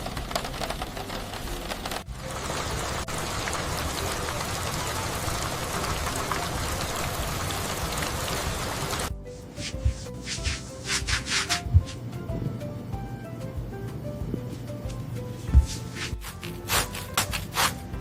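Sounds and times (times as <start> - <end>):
soft plucked music: 0.0 - 8.2, 9.1 - 18.0
heavy rain: 0.0 - 9.1.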